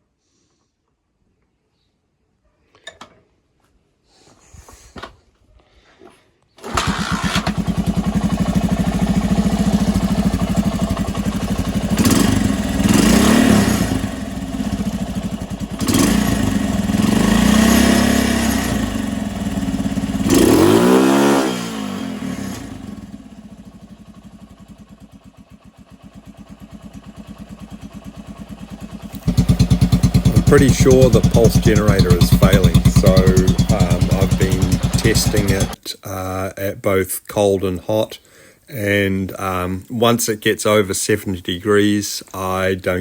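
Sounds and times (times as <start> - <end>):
motorcycle engine starting and revving: 6.6 - 35.8.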